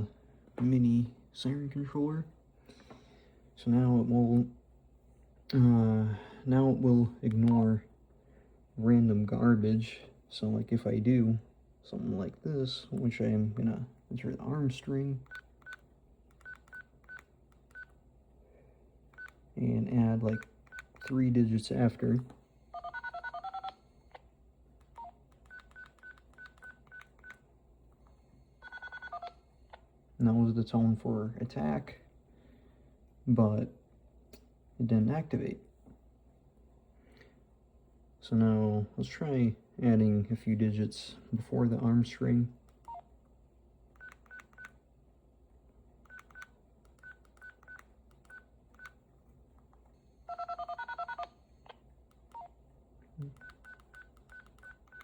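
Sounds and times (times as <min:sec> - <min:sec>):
faint keypad beeps: 0:19.2 - 0:19.4, 0:25.0 - 0:27.4, 0:44.0 - 0:44.7, 0:46.1 - 0:49.0, 0:53.2 - 0:55.0.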